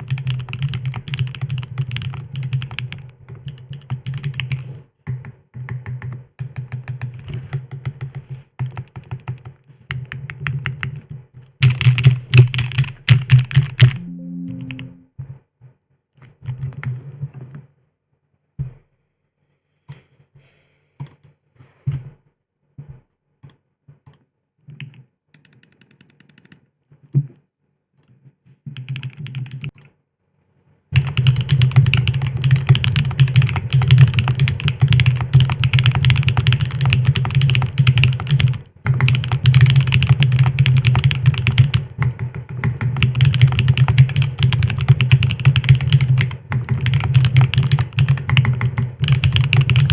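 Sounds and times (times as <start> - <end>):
mechanical keyboard typing: 0.0 - 14.0, 28.7 - 29.9, 31.0 - 49.9.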